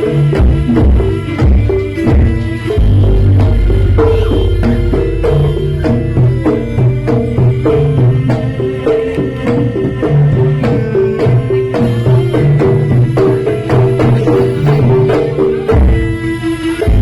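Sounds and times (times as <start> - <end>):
steady drum strokes: 0.0 - 17.0
fast repeating pitched melody: 0.7 - 16.1
deep low note: 2.1 - 8.7.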